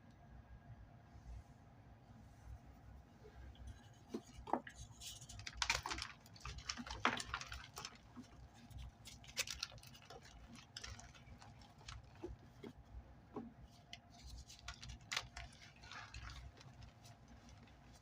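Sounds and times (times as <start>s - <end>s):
steady low hum: 0.0s - 6.1s
chalk crunching and crackling: 3.7s - 18.0s.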